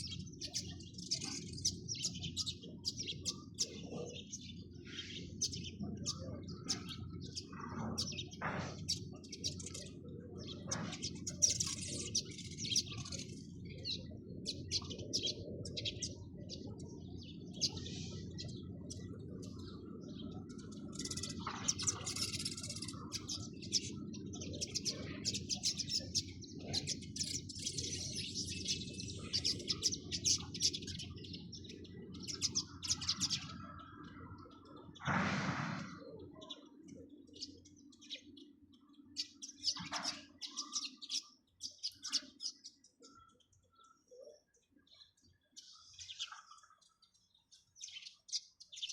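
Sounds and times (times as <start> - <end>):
sparrows chirping: 0.0 - 48.9.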